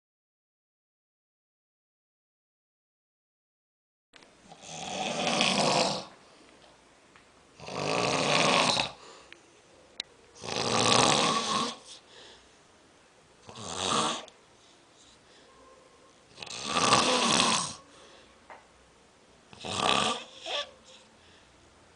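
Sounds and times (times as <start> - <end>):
person snoring: 4.5 - 6.2, 7.6 - 9.0, 10.4 - 12.0, 13.4 - 14.3, 16.3 - 17.9, 19.5 - 20.7.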